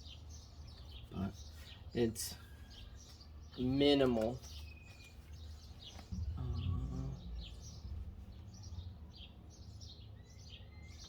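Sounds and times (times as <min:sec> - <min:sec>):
small birds chirping: 0:00.0 - 0:11.0
low rumble with hum: 0:05.0 - 0:09.6.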